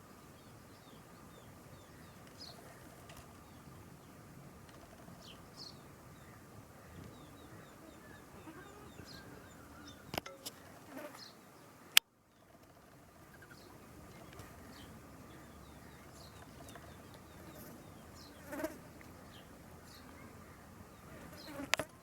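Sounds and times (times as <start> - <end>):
small birds chirping: 0.0 - 22.0
loud bird call: 6.2 - 11.3
peacock call: 7.5 - 10.7.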